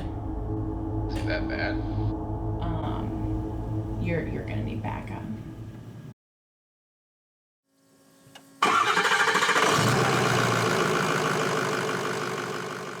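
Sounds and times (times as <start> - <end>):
engine running with fast pulsing: 8.6 - 13.0.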